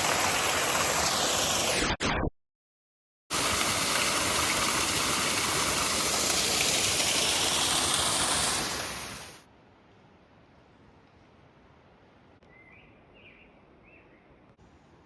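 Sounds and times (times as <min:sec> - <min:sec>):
waterfall rushing: 0:00.0 - 0:01.8, 0:03.3 - 0:09.4.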